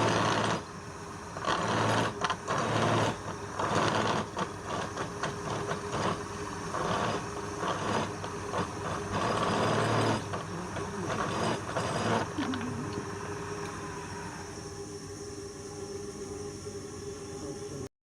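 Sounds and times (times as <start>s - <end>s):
tool scraping spinning wood: 0.0s - 0.7s, 1.4s - 13.0s
wood lathe motor hum: 0.0s - 17.5s.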